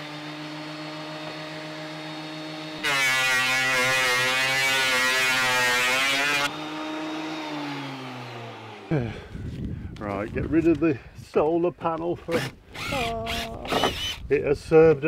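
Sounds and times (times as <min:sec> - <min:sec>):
electric planer motor running: 0:00.0 - 0:08.9
planer shaving wood: 0:00.0 - 0:09.0, 0:12.3 - 0:14.2.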